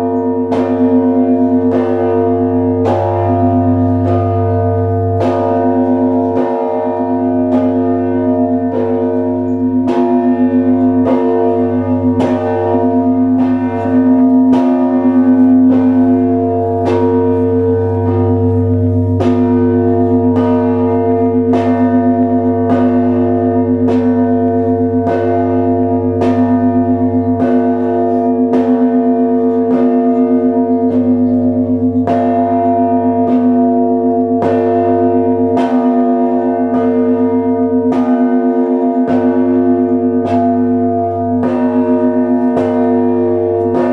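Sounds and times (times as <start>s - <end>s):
church bells ringing: 0.0s - 43.9s
deep bells humming: 0.0s - 43.9s.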